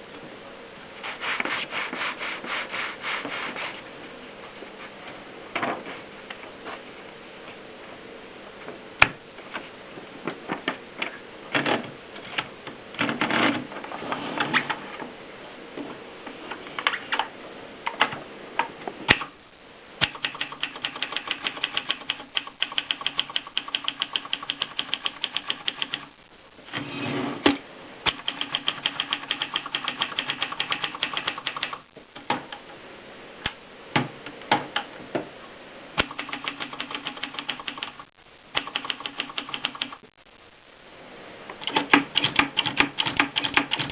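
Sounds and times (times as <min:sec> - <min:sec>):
typewriter key strikes: 0:41.6 - 0:43.9.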